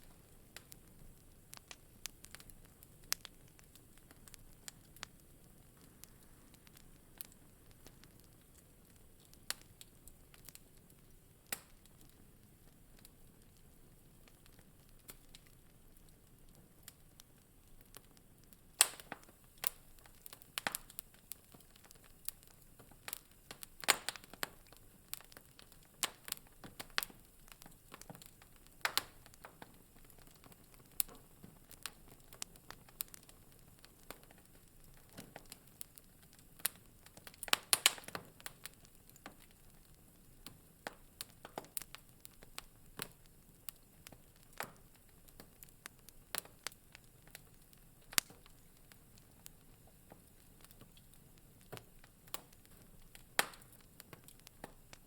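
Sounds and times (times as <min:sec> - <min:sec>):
faint hiss: 0:00.0 - 0:55.0
wood fire crackling: 0:00.0 - 0:55.0.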